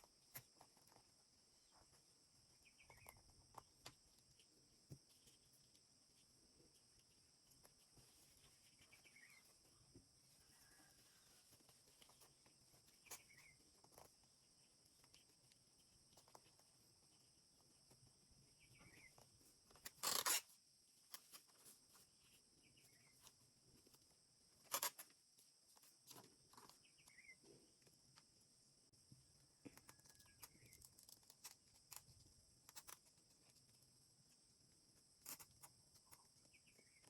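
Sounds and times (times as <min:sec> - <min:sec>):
faint bird chirp: 0:00.0 - 0:19.6, 0:22.2 - 0:23.9, 0:26.1 - 0:27.9, 0:29.4 - 0:31.6, 0:34.9 - 0:37.0.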